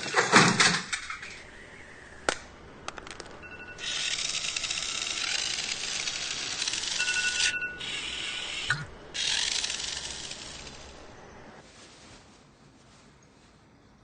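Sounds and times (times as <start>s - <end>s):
alarm clock bell ringing: 3.4s - 8.5s.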